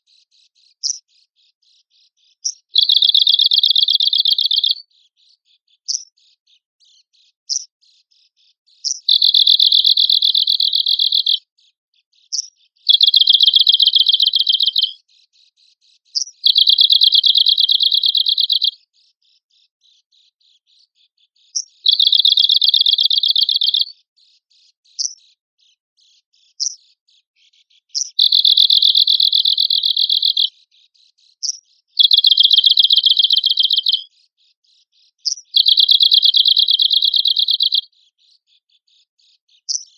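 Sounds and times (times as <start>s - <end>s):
bird singing fast dry trills: 0.0s - 25.4s, 26.0s - 39.9s
sharp bird call notes: 12.9s - 14.9s, 32.0s - 34.0s.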